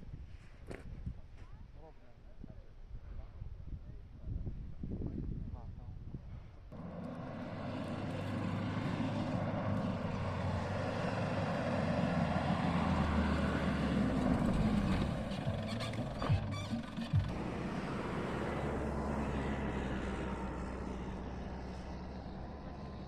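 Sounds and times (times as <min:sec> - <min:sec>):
vehicle engine running: 0:06.7 - 0:23.0.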